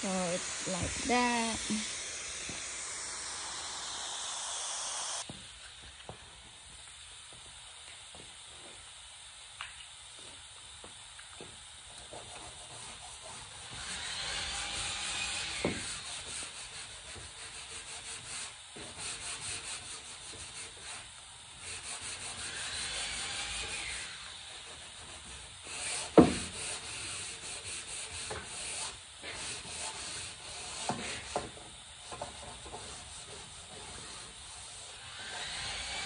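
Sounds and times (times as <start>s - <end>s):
sandpaper rubbing on wood: 0.0s - 4.4s, 12.1s - 36.0s.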